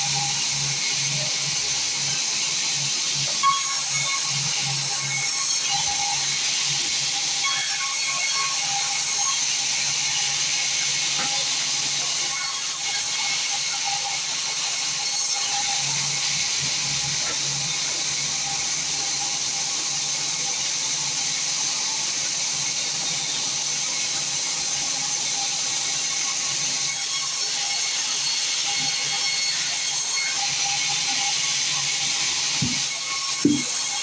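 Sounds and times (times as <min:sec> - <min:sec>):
saw hissing: 0:30.8 - 0:34.0.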